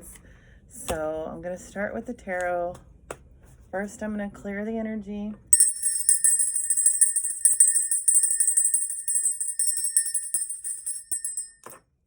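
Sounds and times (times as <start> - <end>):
small jingle bells shaken: 5.6 - 11.6
steady ringing tone: 5.6 - 11.7.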